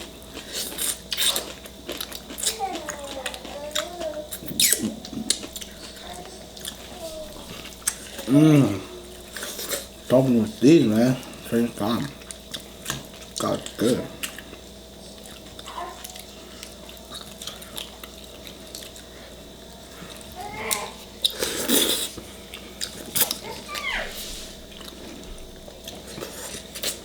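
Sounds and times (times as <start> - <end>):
chewing and biting: 0.0 - 8.3, 12.2 - 19.2, 20.0 - 23.9, 24.7 - 27.0.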